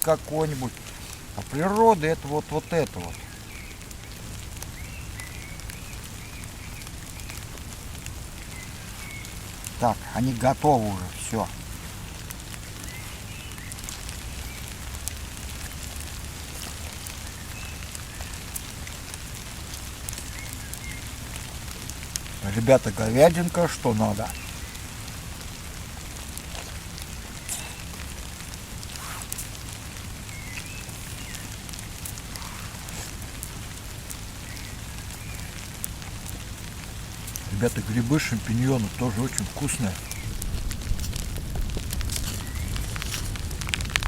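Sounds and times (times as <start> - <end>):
campfire crackling: 0.0 - 44.0
rain hiss: 0.0 - 44.0
low rumble: 40.0 - 44.0.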